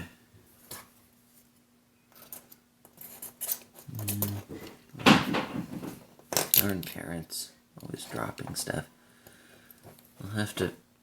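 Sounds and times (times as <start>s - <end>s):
faint steady hum: 0.0s - 11.0s
loud clatter of dropped object: 5.0s - 6.6s.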